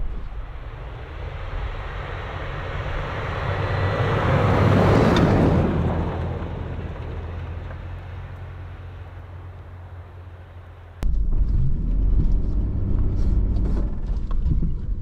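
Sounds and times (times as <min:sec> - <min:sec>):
vehicle passing by: 0:00.0 - 0:14.8
steady low hum: 0:09.0 - 0:15.0.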